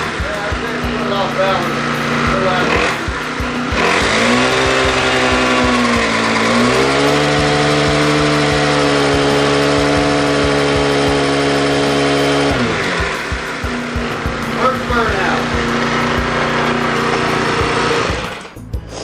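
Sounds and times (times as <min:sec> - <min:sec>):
dirt bike engine revving: 0:00.0 - 0:19.0.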